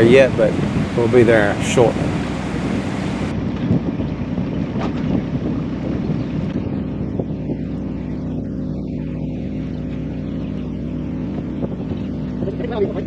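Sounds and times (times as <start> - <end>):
boat engine humming: 0.0 - 3.3
wind noise on microphone: 0.0 - 7.9.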